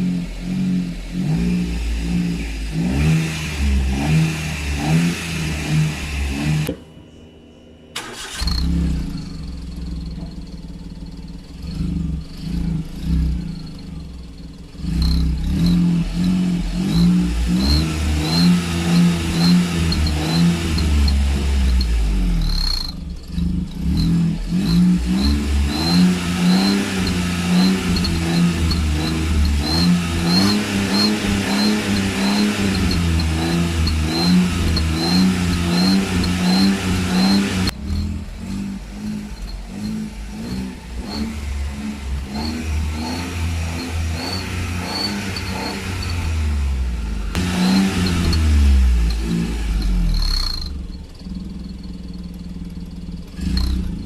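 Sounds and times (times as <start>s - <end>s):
car engine revving: 0.0s - 6.8s, 8.0s - 54.0s
exhaust whistle: 23.7s - 52.3s.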